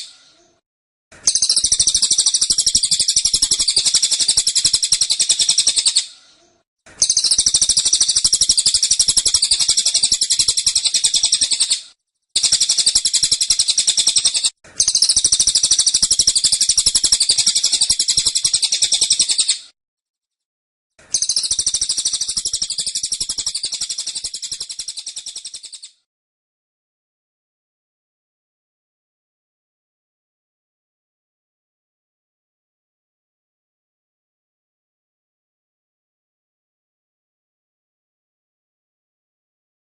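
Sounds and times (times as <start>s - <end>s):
songbird singing rapid high trills: 1.3s - 6.0s, 7.0s - 11.8s, 21.1s - 25.9s.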